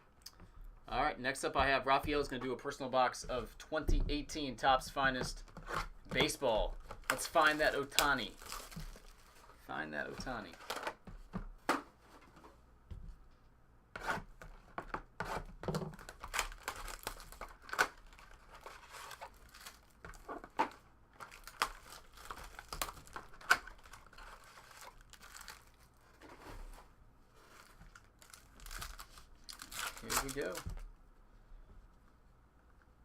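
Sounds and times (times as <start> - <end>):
card packaging tearing: 7.0 - 9.4, 15.9 - 25.8, 27.6 - 30.7.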